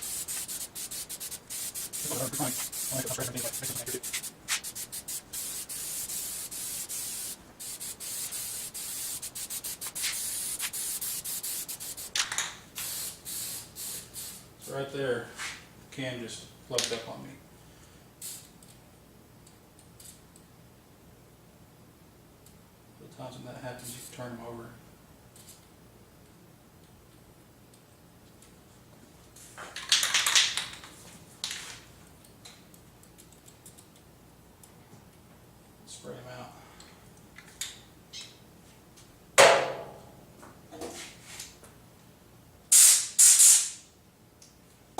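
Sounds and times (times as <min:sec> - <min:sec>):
aerosol spray can hissing: 0:00.0 - 0:12.2, 0:12.8 - 0:14.4, 0:42.7 - 0:43.7.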